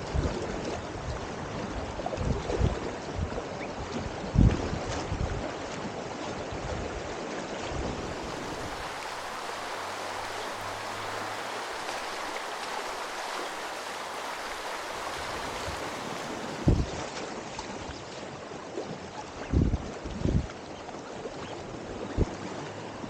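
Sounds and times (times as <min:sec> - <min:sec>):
creek rushing over rocks: 0:07.9 - 0:18.4.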